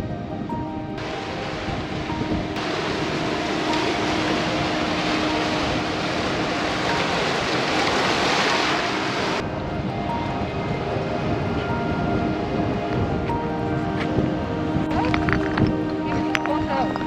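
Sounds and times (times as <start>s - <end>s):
background music with held notes: 0.0s - 17.0s
steady rushing noise: 0.0s - 17.0s.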